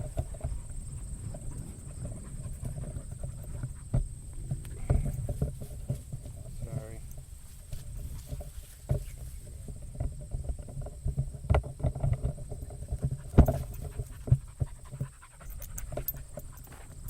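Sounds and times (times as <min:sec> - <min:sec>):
dog panting: 0:00.0 - 0:04.1, 0:13.0 - 0:17.0
short knocks and thumps: 0:00.0 - 0:17.0
wind rumble on microphone: 0:00.0 - 0:17.0.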